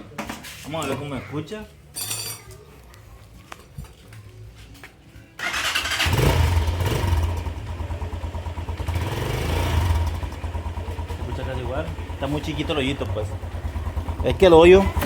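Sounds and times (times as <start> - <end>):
motorcycle engine running: 5.4 - 15.0.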